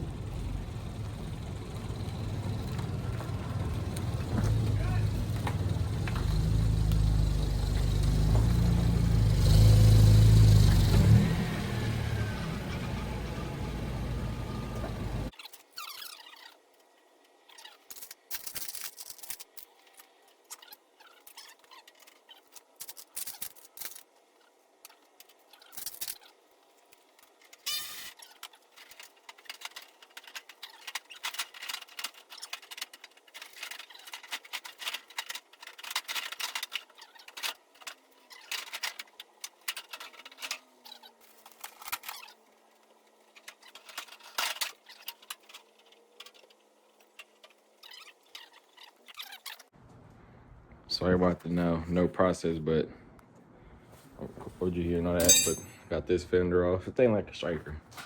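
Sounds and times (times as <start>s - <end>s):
metal parts scraping: 17.4s - 42.4s, 43.2s - 49.7s, 55.2s - 55.8s
hand tools clicking and rattling: 17.5s - 24.2s, 24.9s - 42.4s, 43.3s - 49.7s, 55.2s - 55.8s.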